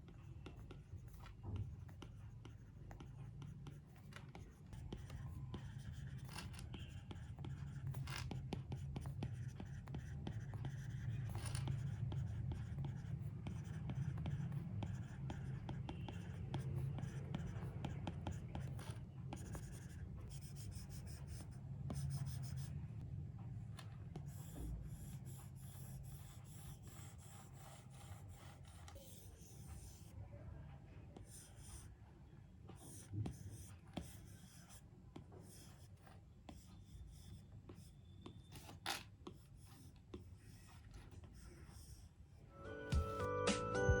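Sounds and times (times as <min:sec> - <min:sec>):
stylus scratching on screen: 0:00.2 - 0:22.8, 0:32.7 - 0:42.4.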